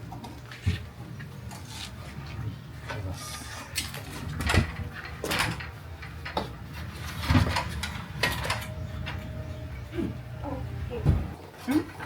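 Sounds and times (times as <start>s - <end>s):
knocks and clatters of hard objects: 3.8s - 9.2s.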